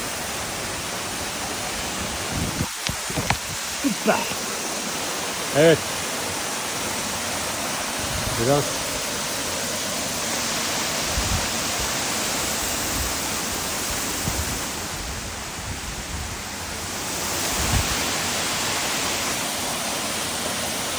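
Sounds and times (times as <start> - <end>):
waterfall rushing: 0.0 - 15.6, 16.6 - 20.9.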